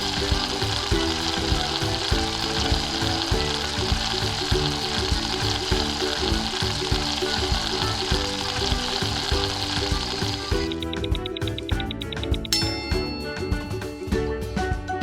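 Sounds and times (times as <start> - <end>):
frying sizzle: 0.0 - 12.1
background music with steady beat: 0.0 - 15.0.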